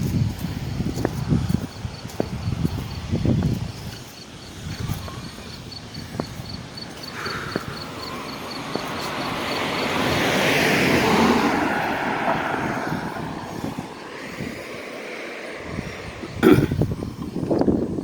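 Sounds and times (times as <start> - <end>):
car driving past: 7.1 - 16.1.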